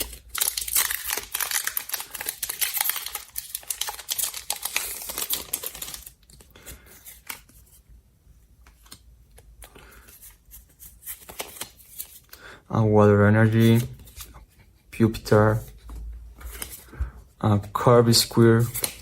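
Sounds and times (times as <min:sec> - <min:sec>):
foil wrapper crinkling: 0:00.0 - 0:06.5
trading cards being handled: 0:00.0 - 0:07.8, 0:08.6 - 0:12.4, 0:13.4 - 0:19.0.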